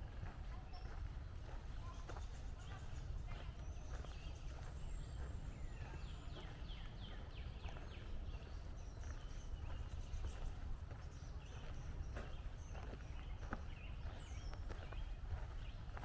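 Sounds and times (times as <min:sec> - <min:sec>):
birds chirping: 0:00.0 - 0:16.0
footsteps crunching on trail: 0:00.0 - 0:16.0.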